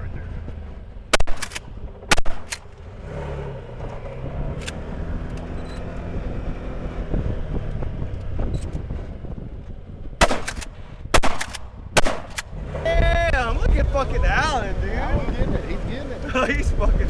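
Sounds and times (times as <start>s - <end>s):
vehicle engine running: 0.0s - 17.0s
shotgun shots: 1.1s - 2.8s, 10.2s - 12.6s.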